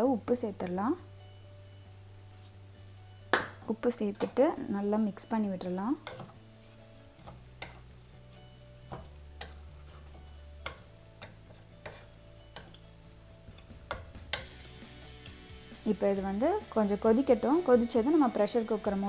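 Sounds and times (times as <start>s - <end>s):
spoon clinking against metal pot: 6.0s - 6.4s, 10.2s - 12.9s
spoon stirring rice in water: 6.0s - 12.9s.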